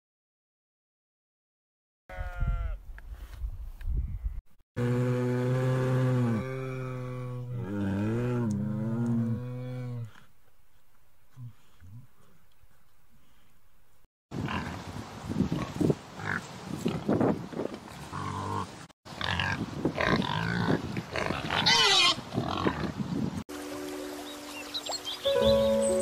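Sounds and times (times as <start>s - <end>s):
animal grunting: 4.8s - 10.3s.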